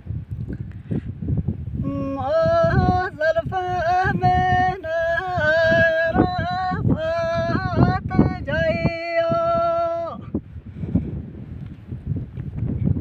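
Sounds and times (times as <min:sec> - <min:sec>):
wind buffeting microphone: 0:00.0 - 0:13.0
high voice singing folk song: 0:01.6 - 0:11.0.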